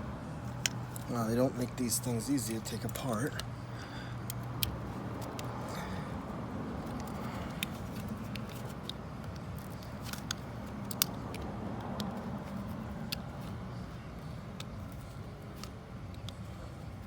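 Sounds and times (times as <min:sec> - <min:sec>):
steady low hum: 0:00.0 - 0:17.0
plastic connector clicks and snaps: 0:10.0 - 0:12.1.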